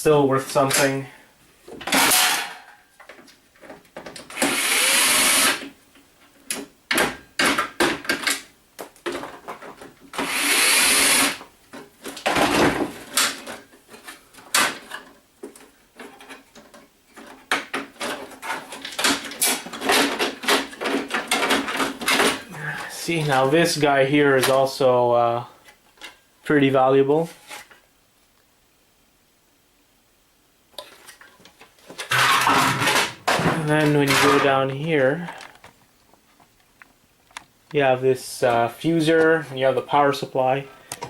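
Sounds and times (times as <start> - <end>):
power drill running: 4.4 - 5.7, 10.2 - 11.4.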